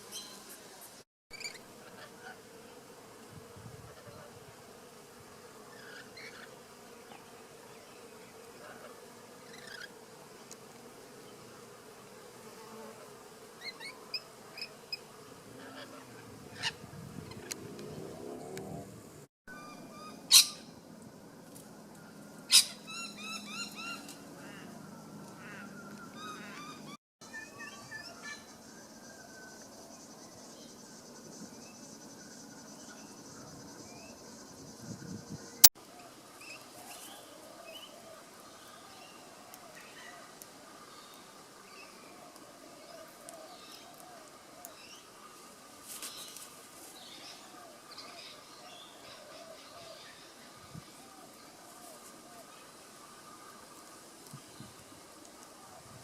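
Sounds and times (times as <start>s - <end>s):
insect buzzing: 0.0s - 19.3s.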